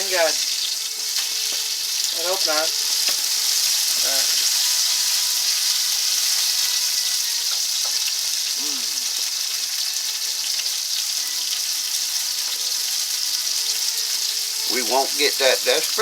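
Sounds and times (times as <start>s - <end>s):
meat sizzling in a frying pan: 0.0s - 16.0s.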